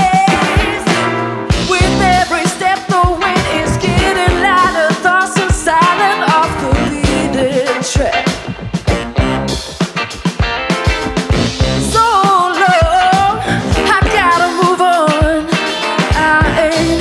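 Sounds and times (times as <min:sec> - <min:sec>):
drums keeping a steady beat: 0:00.0 - 0:17.0
keyboards: 0:00.0 - 0:17.0
wavering lead melody: 0:00.5 - 0:07.8, 0:10.6 - 0:14.6.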